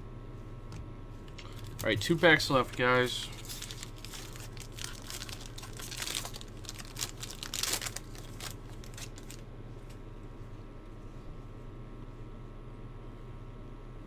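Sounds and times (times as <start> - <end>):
wrapper crinkling and tearing: 1.4 - 9.5.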